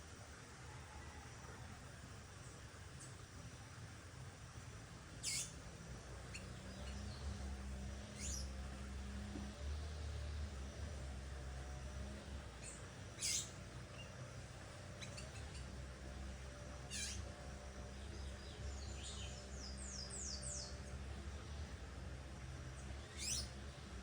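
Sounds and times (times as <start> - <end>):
steady low hum: 0.0 - 24.0
bird sharp high calls: 5.2 - 5.6, 12.6 - 13.6, 16.9 - 17.3, 23.0 - 23.6.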